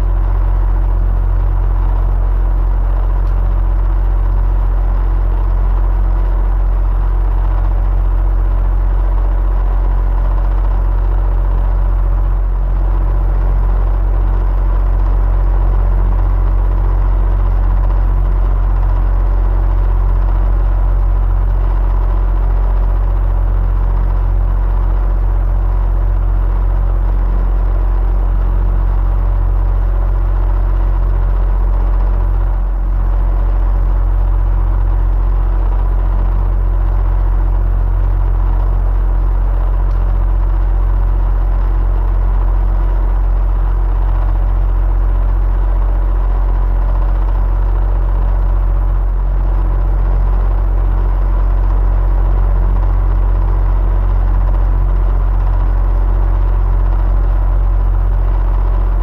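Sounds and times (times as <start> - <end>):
electric fan humming: 0.0 - 55.6.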